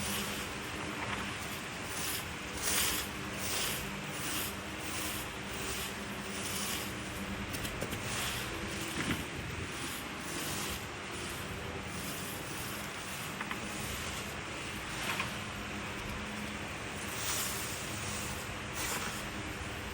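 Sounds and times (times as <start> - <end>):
rake scraping dry leaves: 0.0 - 19.9.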